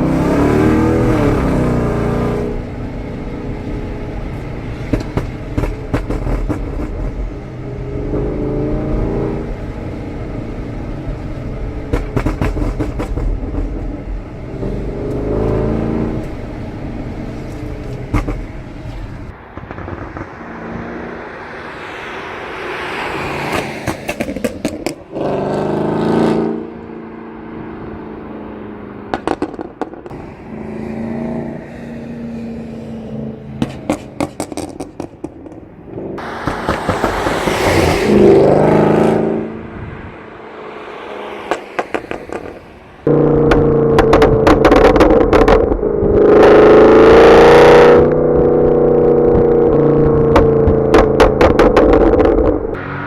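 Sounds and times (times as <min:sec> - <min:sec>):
car engine revving: 0:00.0 - 0:53.0
exhaust pops and crackles: 0:04.9 - 0:07.3, 0:11.8 - 0:14.0, 0:17.5 - 0:20.4, 0:29.1 - 0:30.1, 0:33.6 - 0:35.7, 0:41.5 - 0:46.2, 0:49.2 - 0:52.8.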